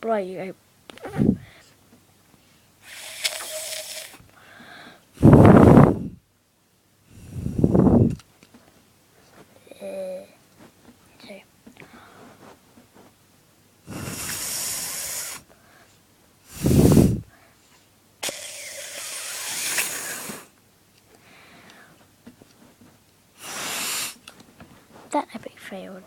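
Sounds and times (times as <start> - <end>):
breathy hissing through straw: 2.8 - 5.9, 13.9 - 17.3, 18.2 - 20.6, 23.4 - 24.2.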